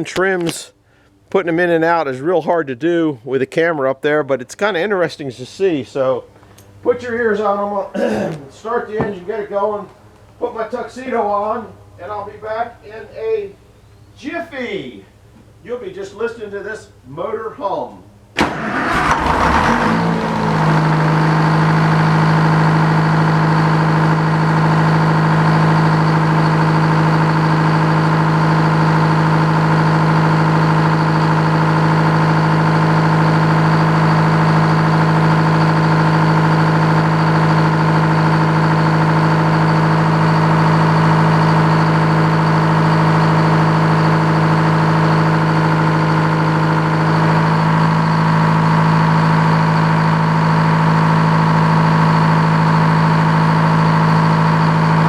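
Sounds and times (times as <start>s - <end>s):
sawmill engine humming: 4.5s - 17.0s, 18.4s - 55.0s.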